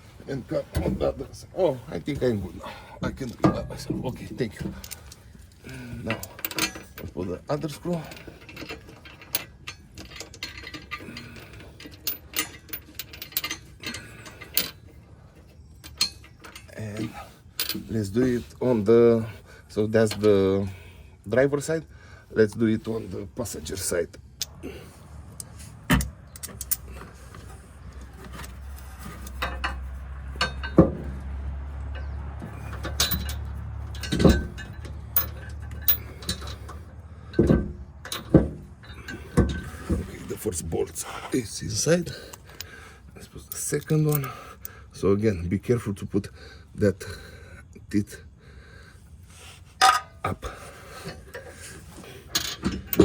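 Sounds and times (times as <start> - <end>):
low steady rumble: 0.0 - 46.9
metal clinks and knocks: 2.0 - 18.5, 24.4 - 40.6, 41.8 - 42.9, 49.8 - 53.0
metal clicks and clinks: 25.4 - 29.8, 31.8 - 40.0, 43.5 - 44.7.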